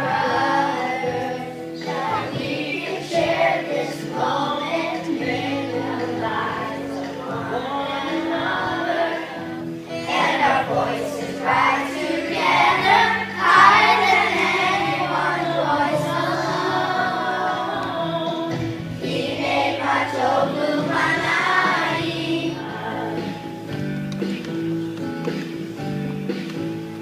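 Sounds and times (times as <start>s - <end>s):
choir singing: 0.0s - 23.4s.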